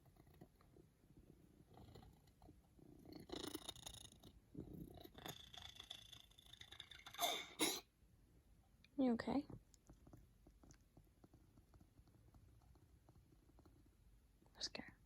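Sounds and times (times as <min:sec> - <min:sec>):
pet snoring: 0:02.9 - 0:07.5.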